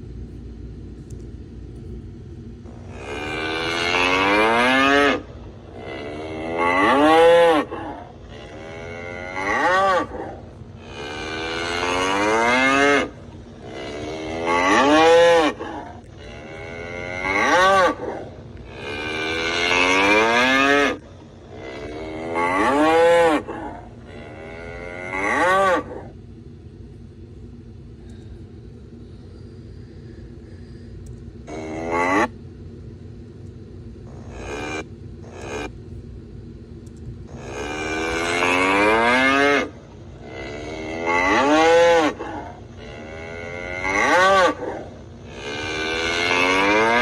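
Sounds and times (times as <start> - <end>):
bull bellowing: 2.6 - 26.2, 31.4 - 32.4, 37.3 - 47.0.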